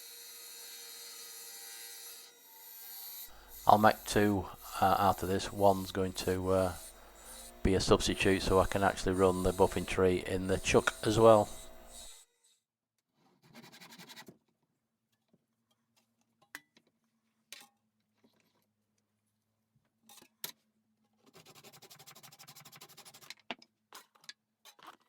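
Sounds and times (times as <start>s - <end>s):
faint steady hum: 3.3s - 12.2s
fast pulsing rasping: 3.3s - 12.2s.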